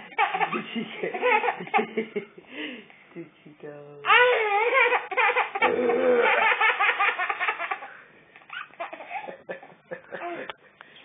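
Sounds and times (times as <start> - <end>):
baby laughing: 0.0 - 2.2, 4.1 - 10.5.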